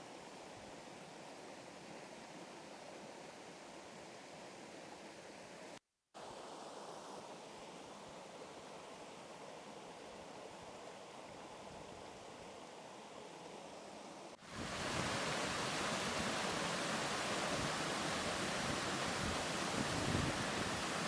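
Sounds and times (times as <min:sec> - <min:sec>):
waterfall rushing: 0:14.5 - 0:21.0.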